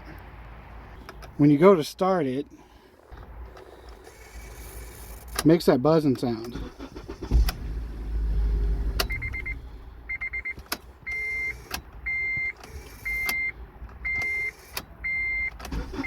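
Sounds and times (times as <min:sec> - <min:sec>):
ignition buzzing chatter: 0:06.4 - 0:08.2
car warning chime beeping: 0:08.8 - 0:16.0.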